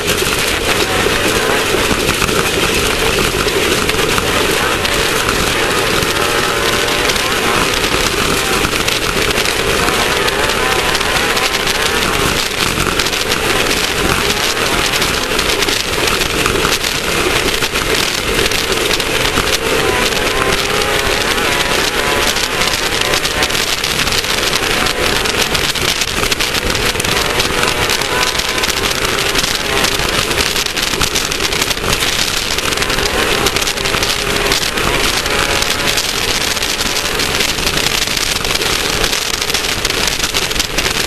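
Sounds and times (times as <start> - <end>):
race car engine droning: 0.0 - 41.0
rush of wind and dirt: 0.0 - 41.0.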